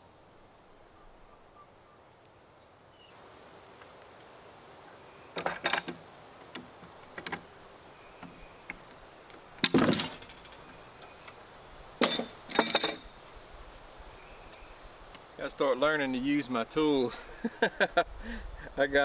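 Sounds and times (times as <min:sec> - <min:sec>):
hand tools clinking: 0:05.4 - 0:06.0, 0:09.6 - 0:10.8, 0:12.0 - 0:13.2.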